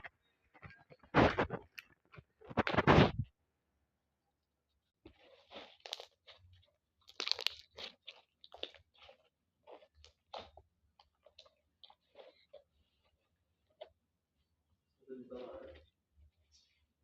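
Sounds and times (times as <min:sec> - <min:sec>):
slime crunching and crackling: 0:05.1 - 0:14.0.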